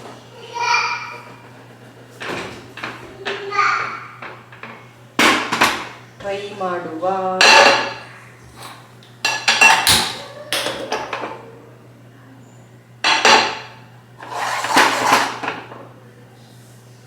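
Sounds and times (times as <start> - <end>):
metal utensils clattering on pots: 4.2 - 6.4, 7.3 - 11.4, 13.0 - 15.8.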